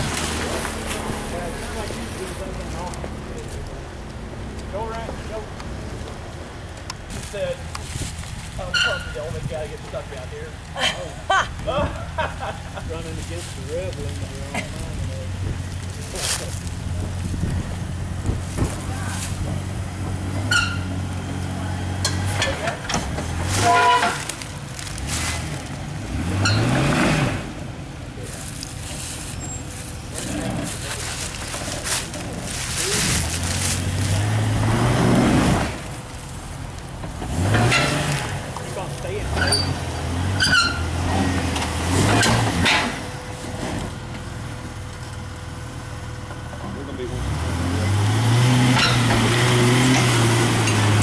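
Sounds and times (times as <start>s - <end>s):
off-road vehicle engine: 0.0s - 51.0s.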